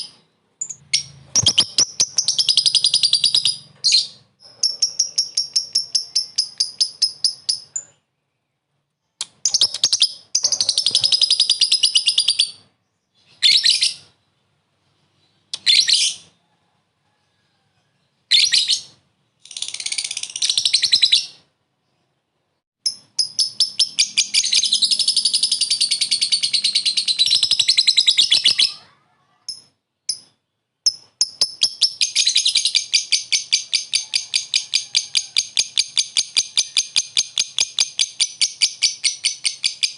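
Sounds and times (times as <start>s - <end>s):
lovebird chattering chirps: 0.0s - 8.0s, 22.8s - 28.8s.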